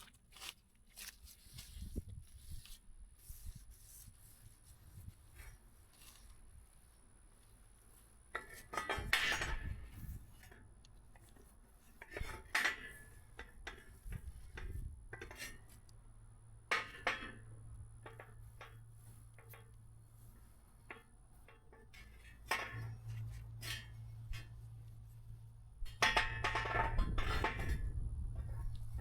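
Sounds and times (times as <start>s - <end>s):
steel brackets clinking and scraping: 8.3s - 15.9s, 16.6s - 29.0s.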